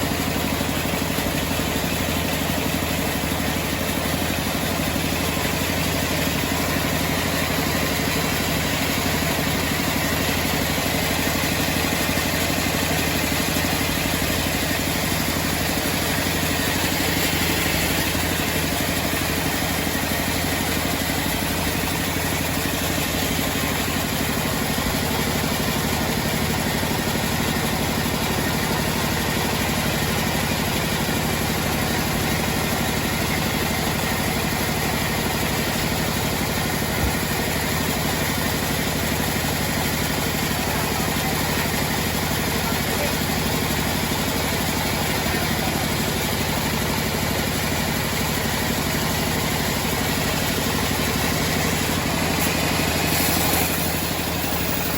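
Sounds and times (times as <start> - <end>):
band sawmill sawing wood: 0.0 - 26.2, 49.7 - 54.9.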